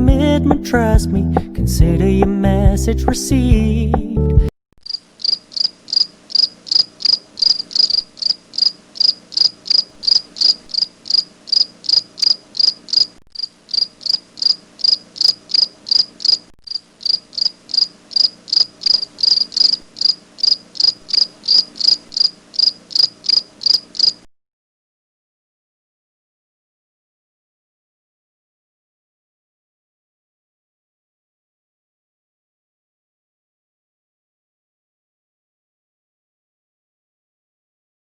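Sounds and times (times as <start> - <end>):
cricket chirping: 4.8 - 24.3.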